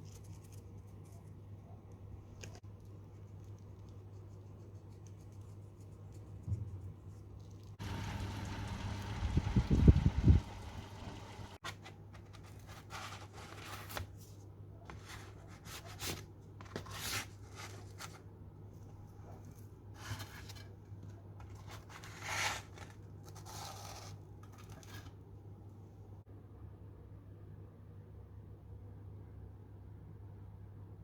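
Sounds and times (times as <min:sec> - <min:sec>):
faint low hum: 0:00.0 - 0:21.9
scraping and rustling strokes: 0:11.5 - 0:25.2.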